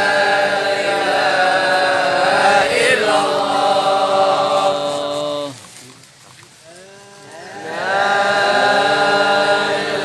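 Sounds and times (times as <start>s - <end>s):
man chanting devotional recitation: 0.0s - 5.6s.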